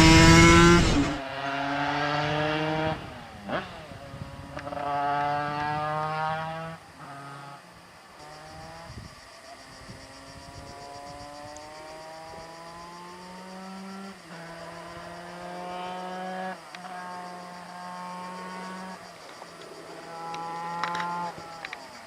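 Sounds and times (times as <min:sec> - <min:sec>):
moped engine accelerating: 0:00.0 - 0:09.1, 0:09.9 - 0:22.0.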